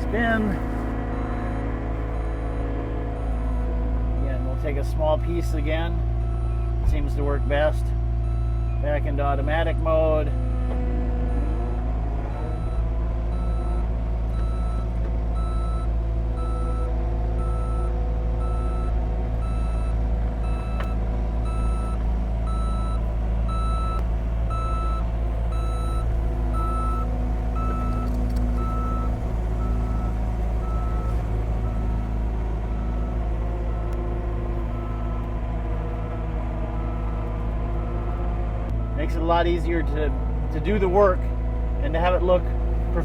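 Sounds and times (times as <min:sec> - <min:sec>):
back-up alarm beeping: 0:00.0 - 0:03.6, 0:15.4 - 0:35.3
diesel engine running under load: 0:00.0 - 0:43.0.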